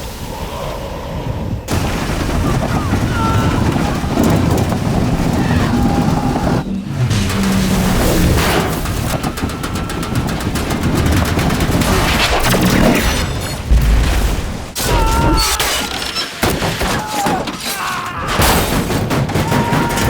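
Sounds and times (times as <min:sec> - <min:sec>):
heavy booms: 0:01.7 - 0:15.6.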